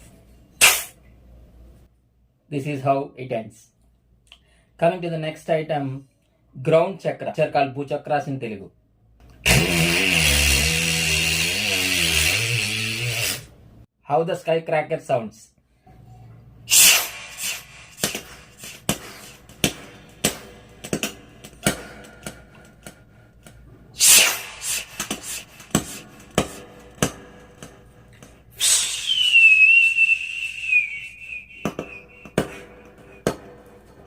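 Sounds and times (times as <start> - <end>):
man imitating firecracker pops: 0.6 - 1.0, 24.0 - 26.1
mouth whistle falling: 28.5 - 33.3.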